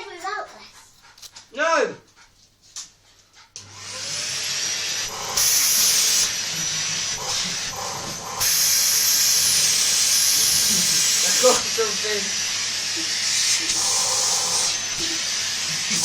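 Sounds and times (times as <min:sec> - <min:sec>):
vacuum cleaner running: 0:03.6 - 0:16.0.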